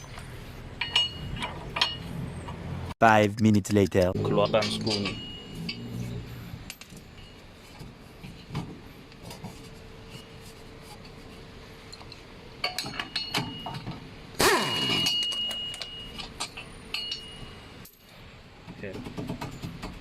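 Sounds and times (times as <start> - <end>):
metal tools clinking: 0.0 - 2.6, 4.2 - 8.7, 11.9 - 14.0, 14.6 - 18.3.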